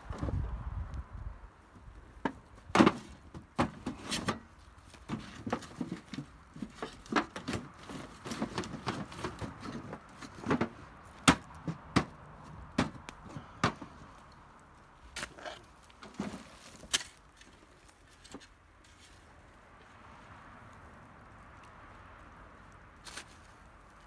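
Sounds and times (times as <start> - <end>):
bamboo knocking and cracking: 2.2 - 14.4.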